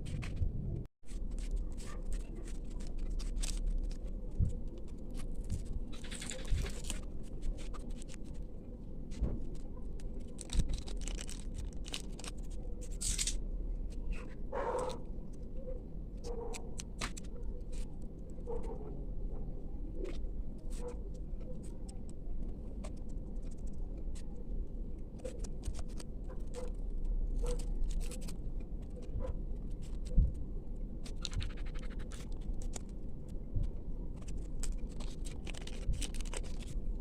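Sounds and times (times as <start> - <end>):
low rumble: 0.0 - 16.2
packaging clicks and scratches: 1.1 - 8.5, 9.4 - 13.4, 25.1 - 30.4, 31.0 - 33.0, 34.2 - 36.9.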